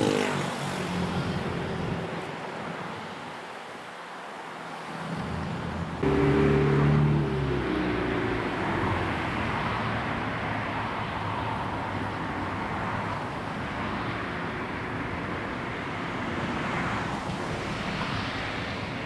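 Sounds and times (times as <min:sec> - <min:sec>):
vehicle running: 0:05.2 - 0:10.0.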